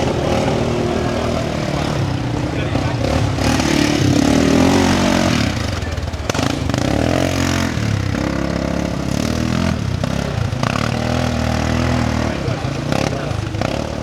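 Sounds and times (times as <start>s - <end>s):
atv engine revving: 0.0s - 14.0s.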